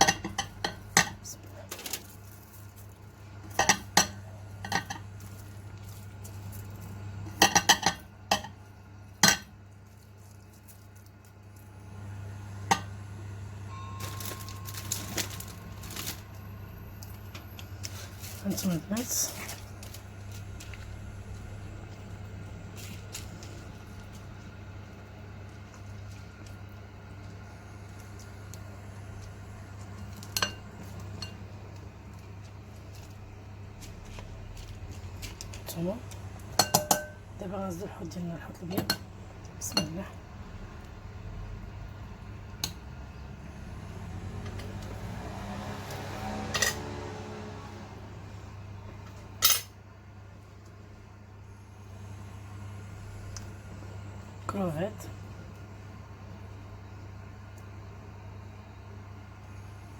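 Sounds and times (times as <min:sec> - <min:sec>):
steady low hum: 0:00.0 - 0:46.8, 0:47.6 - 0:59.9
rice rustling and scraping: 0:17.7 - 0:21.0
metal utensil clinking on pan: 0:36.6 - 0:37.2.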